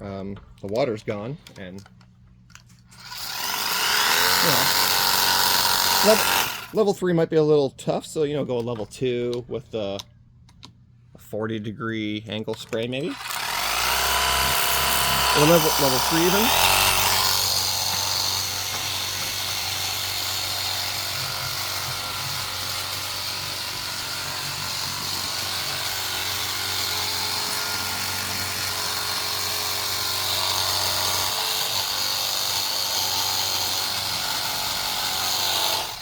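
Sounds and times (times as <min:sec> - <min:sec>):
pump motor humming: 0:13.1 - 0:36.0.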